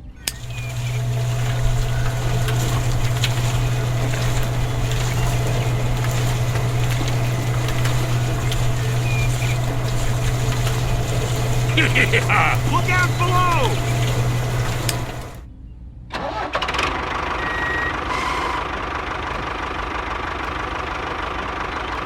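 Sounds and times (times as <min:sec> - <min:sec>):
small motor humming: 0:00.2 - 0:15.4.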